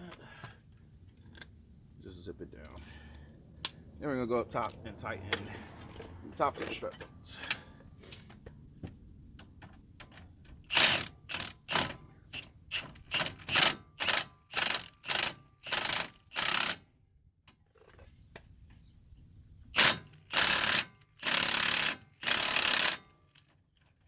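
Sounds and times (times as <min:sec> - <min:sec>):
ratchet wrench bursts: 0:10.7 - 0:16.8, 0:19.7 - 0:23.1.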